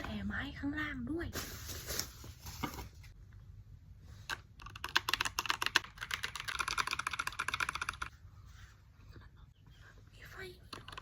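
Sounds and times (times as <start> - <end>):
mechanical keyboard typing: 4.6 - 8.1.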